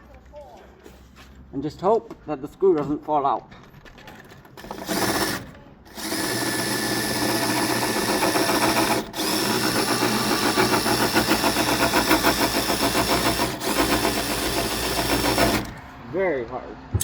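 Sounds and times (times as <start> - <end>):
impact driver hammering rattle: 4.6 - 15.9.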